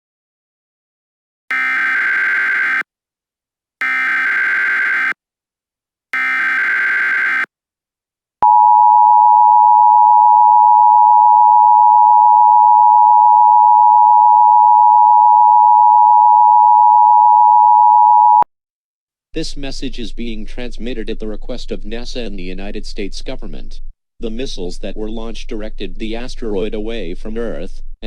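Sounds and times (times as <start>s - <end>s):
buzzing data bursts: 1.5s - 2.8s, 3.8s - 5.2s, 6.2s - 7.5s
two-tone attention signal: 1.5s - 2.8s, 3.8s - 5.2s, 6.2s - 7.5s.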